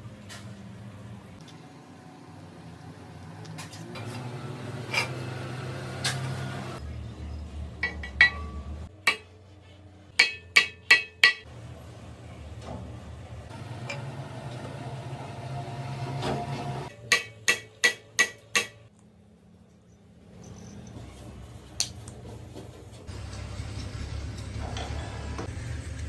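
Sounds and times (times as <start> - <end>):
low machine hum: 1.1 - 7.6, 11.5 - 16.9.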